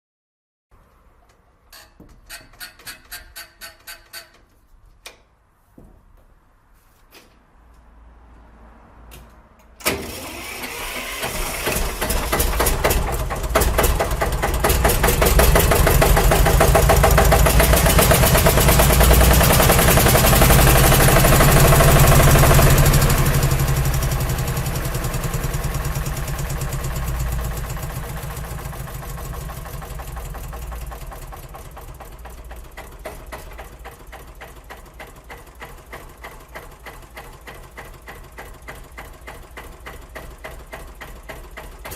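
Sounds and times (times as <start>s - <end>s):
tractor engine starting and running: 9.1s - 41.9s.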